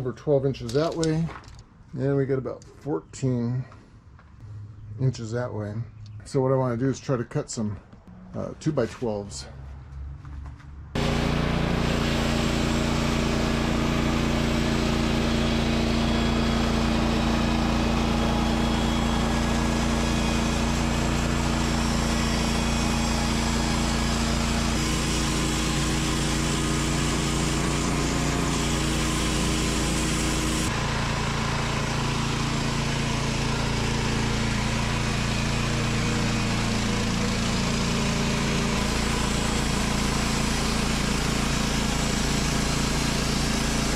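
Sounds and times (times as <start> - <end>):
bandsaw mill sawing log: 11.0 - 43.9.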